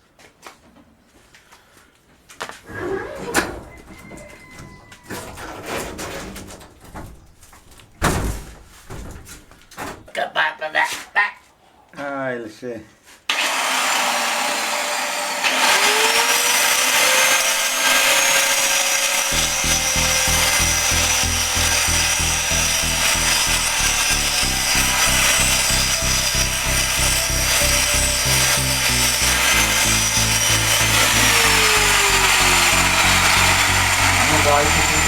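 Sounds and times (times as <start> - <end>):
angle grinder grinding metal: 13.3 - 35.0
music with beat and bass line: 19.3 - 35.0.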